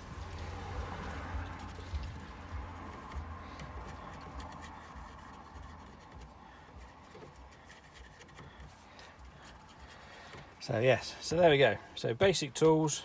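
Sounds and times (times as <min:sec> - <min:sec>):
low steady rumble: 0:00.0 - 0:07.0
faint rubbing and scratching: 0:00.0 - 0:11.8.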